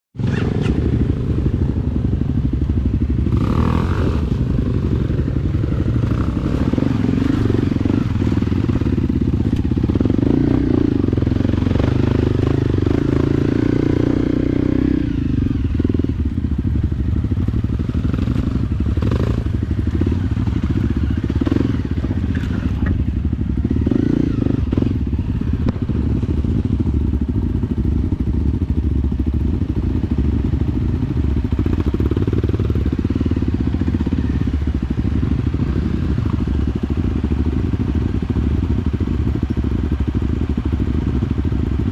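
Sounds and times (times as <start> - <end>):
motorcycle engine running: 0.2 - 41.9.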